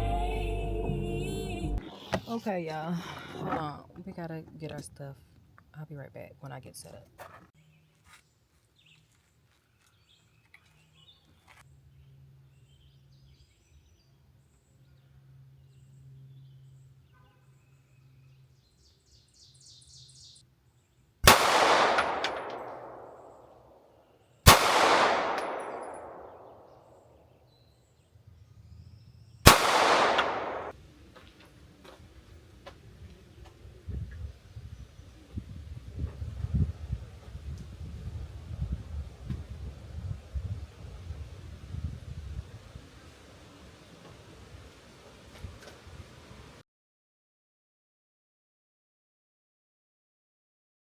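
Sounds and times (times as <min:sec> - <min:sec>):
gunshots with long echo: 0:21.2 - 0:23.6, 0:24.5 - 0:26.7, 0:29.5 - 0:30.8.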